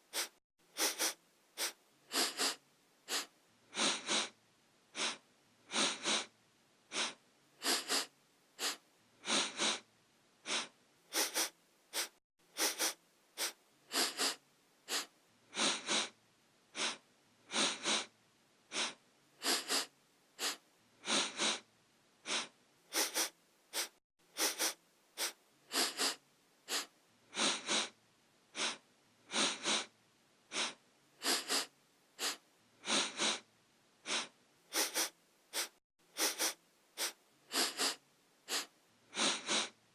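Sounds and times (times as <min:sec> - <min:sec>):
person sniffing: 0:00.0 - 0:06.3, 0:06.9 - 0:18.1, 0:18.7 - 0:29.9, 0:30.5 - 0:39.8.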